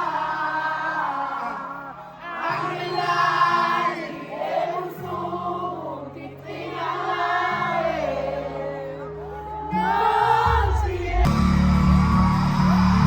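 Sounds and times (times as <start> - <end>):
voices singing together: 0.0 - 13.0
held low chords: 10.5 - 13.0.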